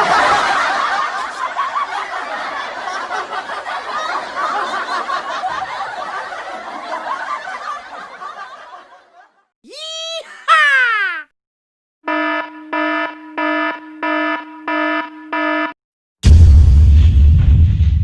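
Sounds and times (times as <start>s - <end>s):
crowd laughing: 0.0s - 11.3s.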